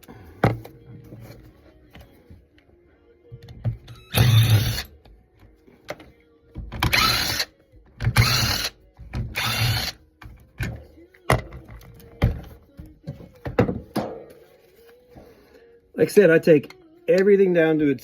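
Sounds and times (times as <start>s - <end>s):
power drill bursts: 4.1s - 4.9s, 6.9s - 7.5s, 8.1s - 8.7s, 9.4s - 10.0s.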